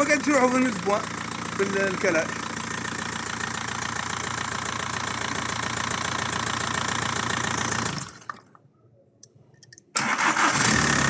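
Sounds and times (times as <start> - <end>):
diesel car engine idling: 0.0 - 8.3.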